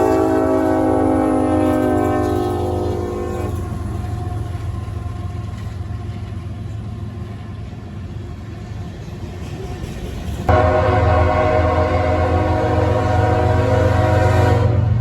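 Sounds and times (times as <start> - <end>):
locomotive horn: 0.0 - 4.4, 10.5 - 15.0
freight train rumbling: 0.0 - 15.0.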